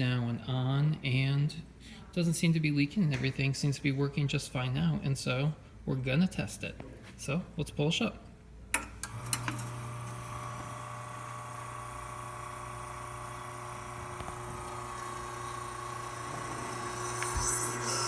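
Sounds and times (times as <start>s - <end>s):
espresso machine pump humming: 9.1s - 18.0s.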